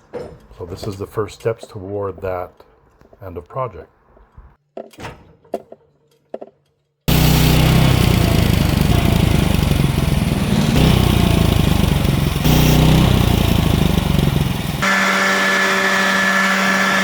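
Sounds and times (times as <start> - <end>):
sawmill engine running: 7.1 - 17.0.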